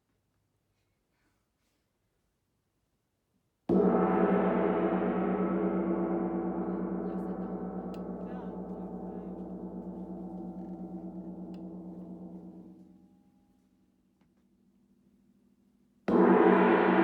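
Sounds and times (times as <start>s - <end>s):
gong ringing: 3.7s - 12.7s.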